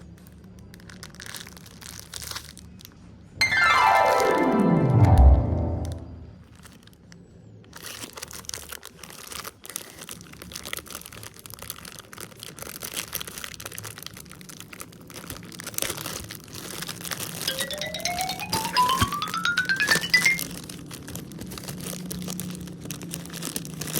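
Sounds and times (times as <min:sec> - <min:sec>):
packaging crinkling and crackling: 0:00.2 - 0:02.6, 0:07.8 - 0:17.2, 0:21.1 - 0:23.9
tone gliding upward: 0:03.4 - 0:06.3, 0:17.5 - 0:20.4.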